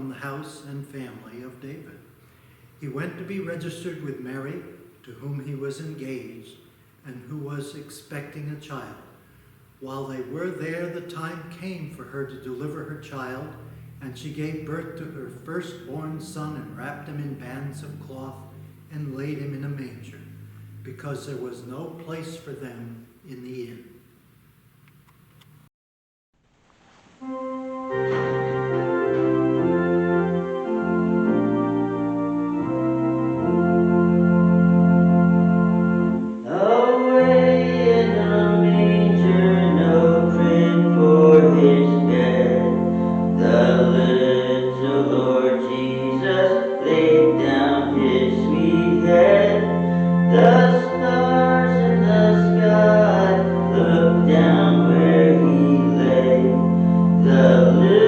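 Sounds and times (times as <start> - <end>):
organ playing chords: 0.0 - 23.9, 27.2 - 58.0
voices singing a hymn: 9.8 - 23.0, 28.0 - 58.0.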